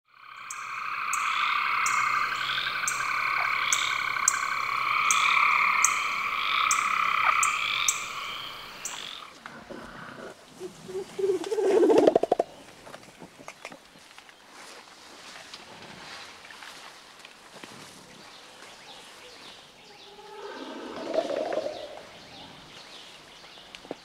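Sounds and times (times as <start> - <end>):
low pulsed frog croak: 0.1 - 9.3, 20.1 - 22.4
chorus of frogs trilling: 0.1 - 9.4, 20.1 - 22.4.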